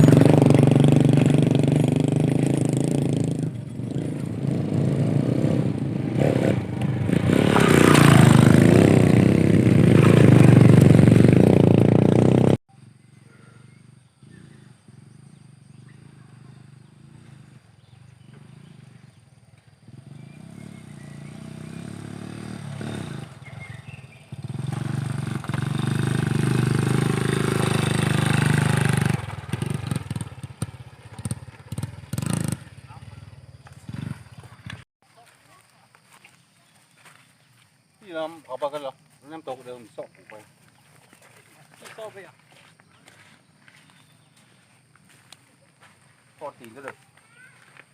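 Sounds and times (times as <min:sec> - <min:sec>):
motorcycle engine running: 0:00.0 - 0:13.0, 0:13.6 - 0:35.4.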